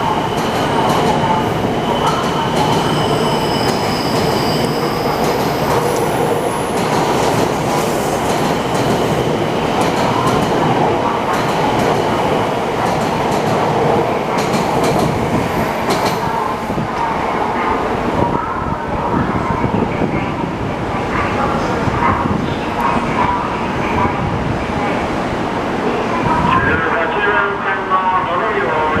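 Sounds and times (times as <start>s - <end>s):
train cars rumbling: 0.0s - 29.0s
high wheel squeals: 2.8s - 5.6s.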